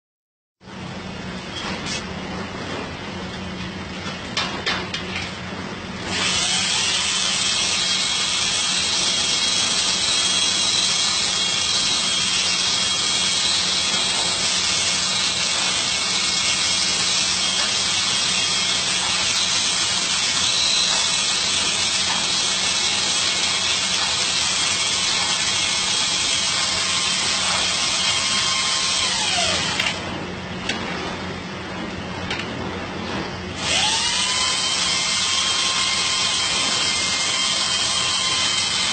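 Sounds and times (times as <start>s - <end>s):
electric power drill running: 6.1s - 30.1s, 33.6s - 38.9s.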